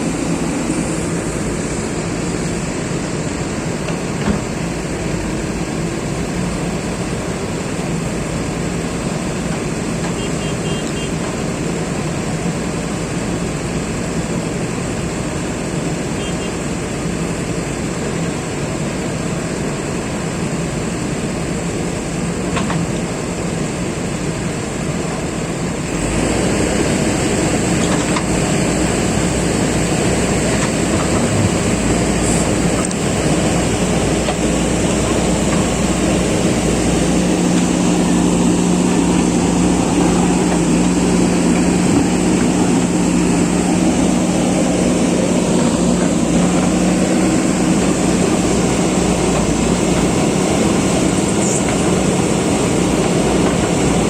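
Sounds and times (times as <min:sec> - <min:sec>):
diesel engines under load: 0:00.0 - 0:54.0
steady engine hum: 0:00.0 - 0:54.0.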